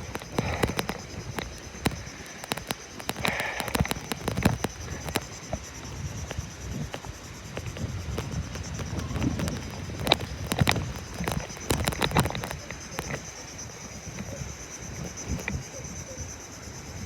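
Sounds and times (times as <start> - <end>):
clicks and knocks: 0.0 - 7.0
high insect drone: 0.0 - 17.0.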